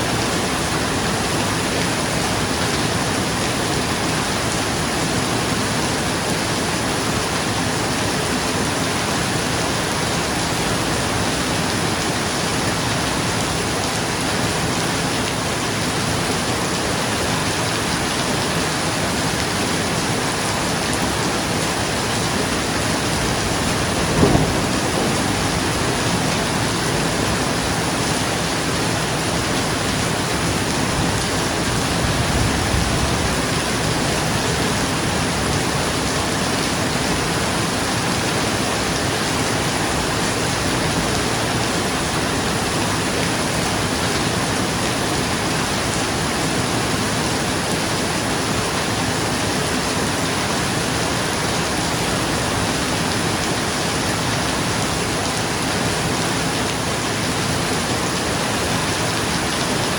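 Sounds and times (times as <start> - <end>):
rain falling on a roof: 0.0 - 59.9
low roll of thunder: 22.0 - 36.2
sharp thunderclap: 22.7 - 28.7.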